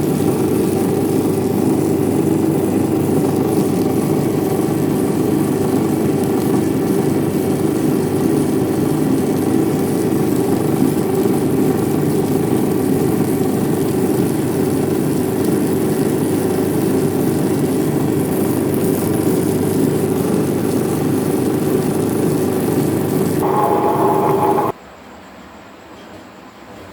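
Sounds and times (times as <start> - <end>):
steady motor hum: 22.3 - 24.7.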